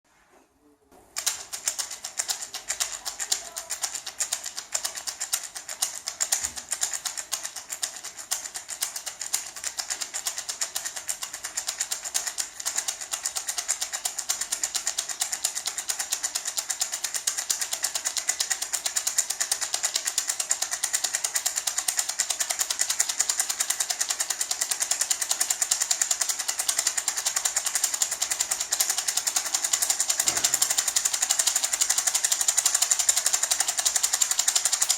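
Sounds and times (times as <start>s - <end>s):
gourd maraca rattling: 24.4s - 34.9s.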